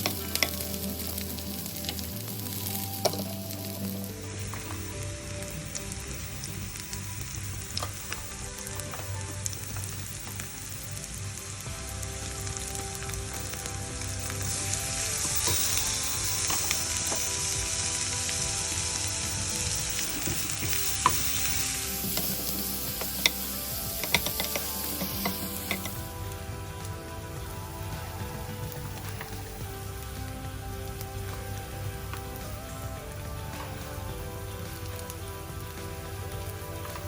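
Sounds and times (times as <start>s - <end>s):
food sizzling in hot oil: 0.0s - 37.0s
utensil clicking against pan: 22.1s - 26.0s.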